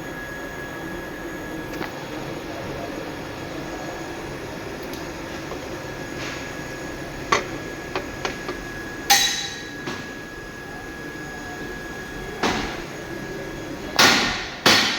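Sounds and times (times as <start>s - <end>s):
steady hum: 0.0s - 14.9s
sharp metal knocks and clanks: 9.1s - 10.0s.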